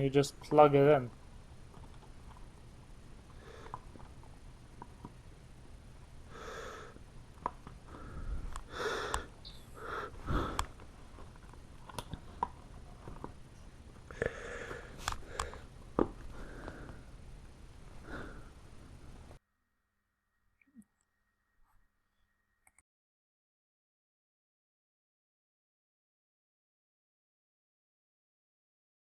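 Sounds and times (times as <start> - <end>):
breathy noises: 3.3 - 4.1, 6.2 - 7.0, 7.8 - 11.3, 14.0 - 17.2, 17.9 - 18.7.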